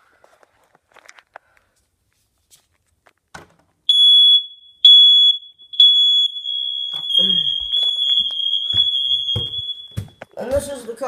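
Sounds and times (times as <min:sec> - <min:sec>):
smoke detector beeping: 0:03.9 - 0:10.4.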